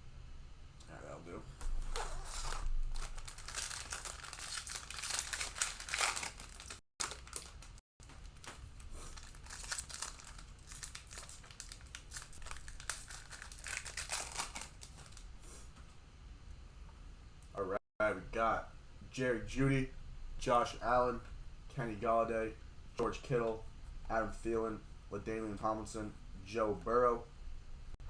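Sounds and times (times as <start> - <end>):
cellophane wrapper crinkling: 1.8 - 15.3.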